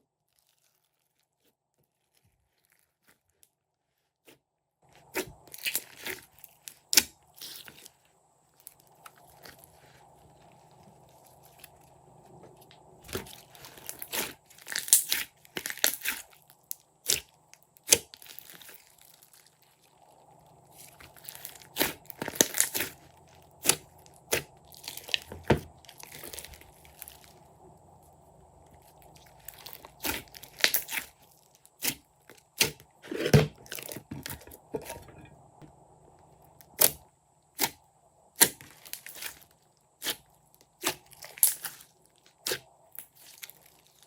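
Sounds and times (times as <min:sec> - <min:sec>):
slime squished by hand: 0:13.0 - 0:19.8, 0:20.7 - 0:27.5, 0:28.7 - 0:32.0, 0:42.4 - 0:42.6.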